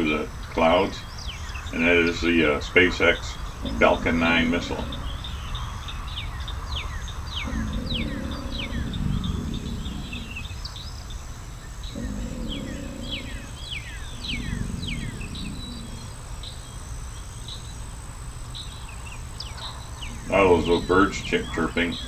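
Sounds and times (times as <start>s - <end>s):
small birds chirping: 0.0s - 22.0s
alligators bellowing: 1.7s - 6.1s, 7.0s - 16.9s, 20.0s - 22.0s.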